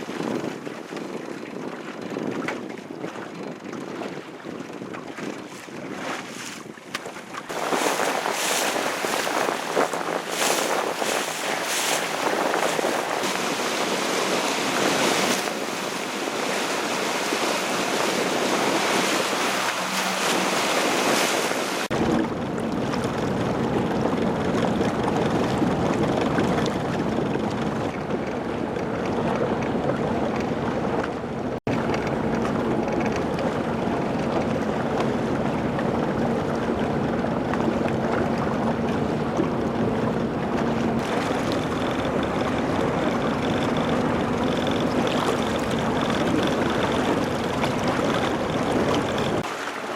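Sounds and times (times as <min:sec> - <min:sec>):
wind gusting across microphone: 0:00.0 - 0:49.5
rushing water: 0:00.0 - 0:49.9
deep rumble: 0:21.8 - 0:49.4.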